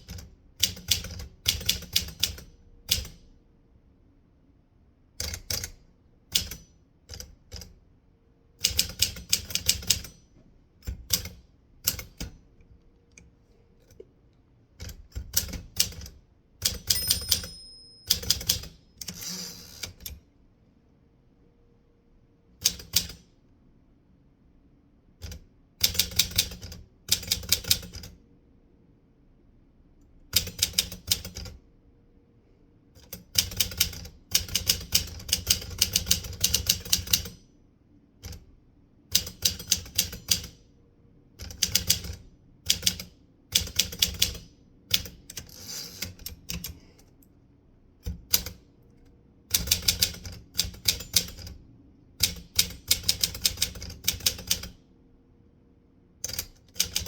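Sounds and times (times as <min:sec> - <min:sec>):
typewriter key strikes: 0:14.8 - 0:19.2, 0:49.6 - 0:51.5.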